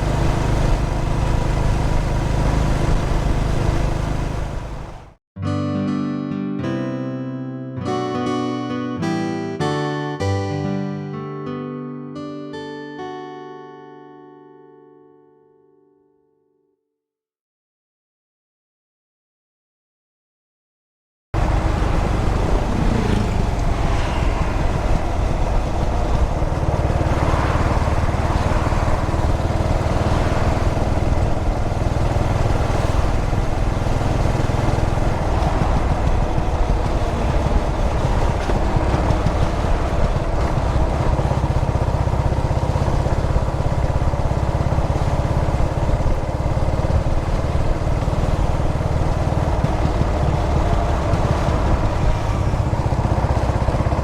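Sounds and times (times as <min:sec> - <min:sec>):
motorcycle engine running: 0:00.0 - 0:05.2, 0:21.4 - 0:54.0
wind and road noise: 0:00.0 - 0:05.2, 0:21.4 - 0:54.0.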